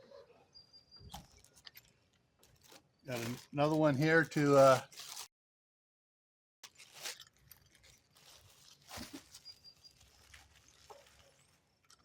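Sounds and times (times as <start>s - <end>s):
soft rustles of small parts: 1.1s - 5.3s, 6.6s - 12.0s.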